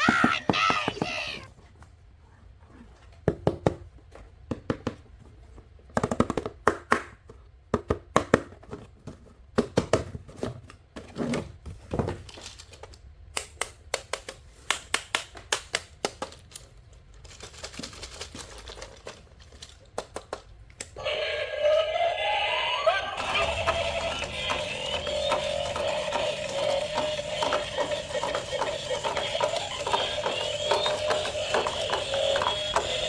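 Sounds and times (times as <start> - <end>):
small hard objects clicking: 23.2 - 33.0.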